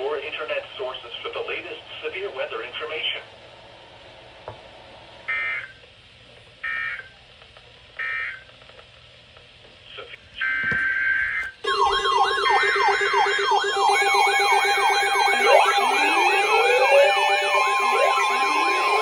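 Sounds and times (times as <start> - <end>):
steady alarm tones: 10.4 - 19.0
siren-like warble: 11.6 - 19.0
digital data bursts: 11.7 - 19.0.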